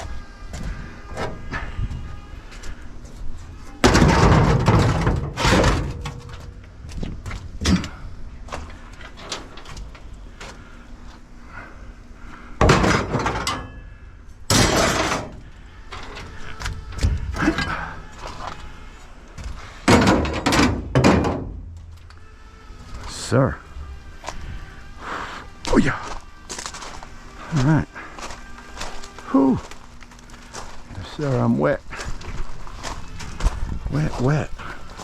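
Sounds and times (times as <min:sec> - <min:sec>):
scrap metal crashing and clanking: 0:03.8 - 0:06.5, 0:12.6 - 0:13.8, 0:14.5 - 0:15.4, 0:19.8 - 0:21.6.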